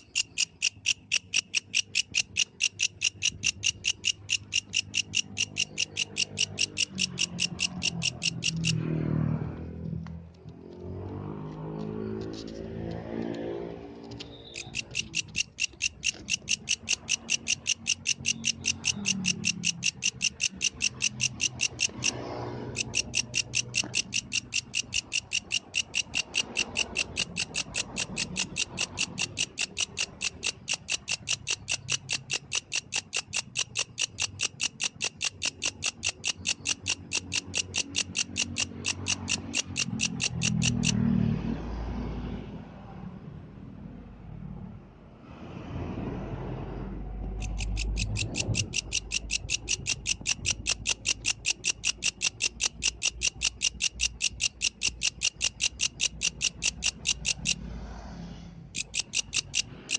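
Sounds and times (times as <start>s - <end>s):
grasshopper chirping: 0.0s - 9.1s, 14.1s - 41.1s, 47.2s - 57.7s, 58.8s - 59.9s.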